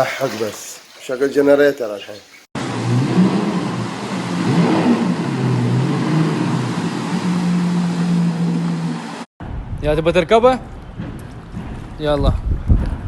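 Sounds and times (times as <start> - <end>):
engine running: 2.6 - 9.3.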